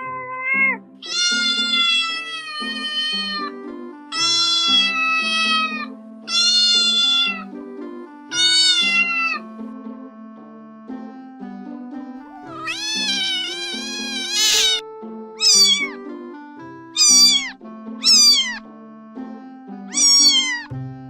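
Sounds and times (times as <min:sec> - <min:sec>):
kitten meowing: 0:00.0 - 0:03.5, 0:04.1 - 0:07.5, 0:08.3 - 0:09.5, 0:12.3 - 0:14.8, 0:15.4 - 0:16.0, 0:17.0 - 0:18.6, 0:19.9 - 0:20.7
background music: 0:00.0 - 0:21.0.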